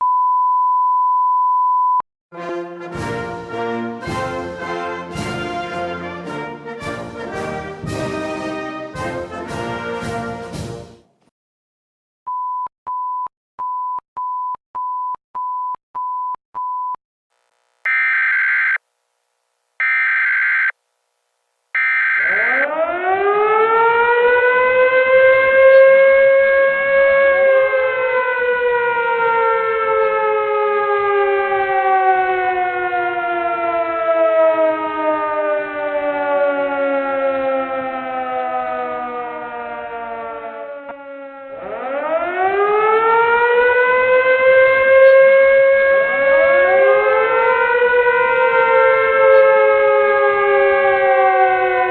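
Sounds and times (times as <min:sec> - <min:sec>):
lower siren tone: 0:17.9 - 0:18.8, 0:19.8 - 0:20.8, 0:21.8 - 0:51.9
civil defense siren: 0:21.8 - 0:51.9.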